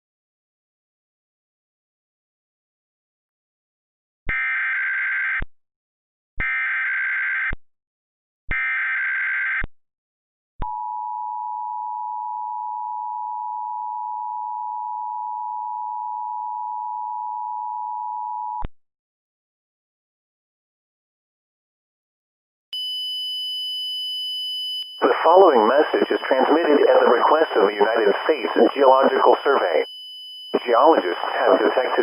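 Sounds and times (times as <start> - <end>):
data noise bursts: 25.0 - 29.8, 30.6 - 32.0.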